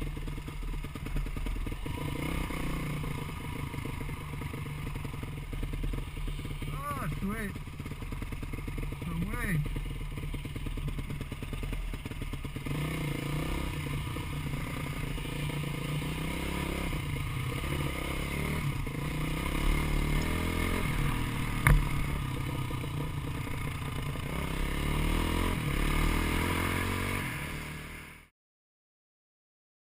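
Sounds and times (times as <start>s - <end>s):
dirt bike engine revving: 0.0s - 28.3s
sharp knock: 21.6s - 22.2s.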